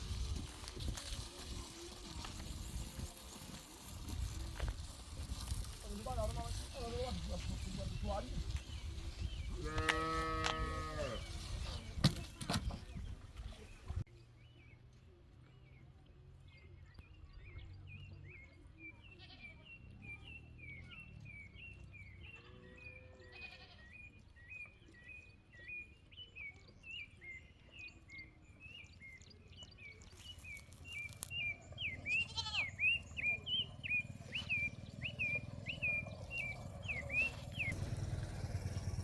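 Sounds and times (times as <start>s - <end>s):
goat bleating: 9.6s - 11.2s, 19.2s - 19.5s, 22.4s - 24.0s, 32.1s - 32.9s
bird chirping: 16.5s - 38.0s.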